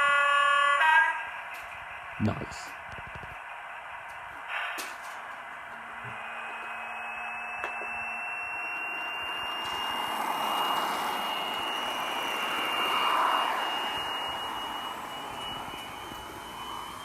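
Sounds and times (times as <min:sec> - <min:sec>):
diesel engine sound through small speaker: 0:01.1 - 0:04.0.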